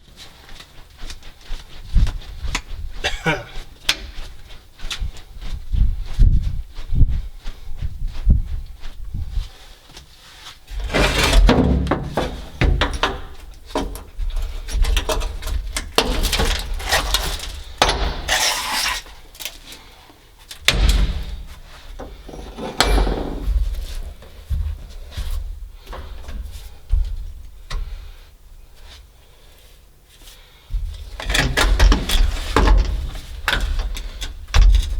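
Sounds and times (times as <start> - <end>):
hand tools knocking on metal: 10.9 - 14.1, 22.0 - 24.7.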